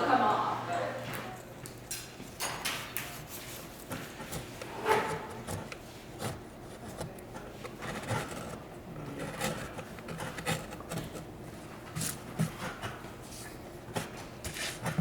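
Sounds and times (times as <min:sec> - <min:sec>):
carving tool scraping wood: 0:03.1 - 0:12.9, 0:13.9 - 0:15.0.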